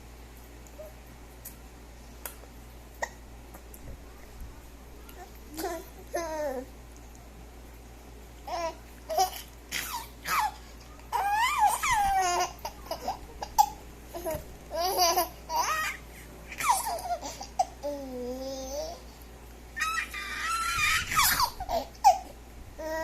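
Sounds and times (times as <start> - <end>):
baby giggling and laughing: 8.5 - 19.0, 19.8 - 23.0.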